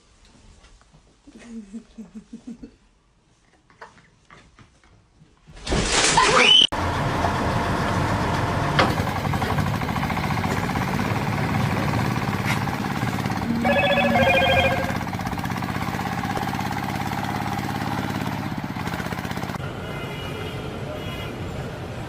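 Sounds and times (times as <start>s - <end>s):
engine running roughly: 6.8s - 19.6s
short pitched tones: 13.4s - 15.2s.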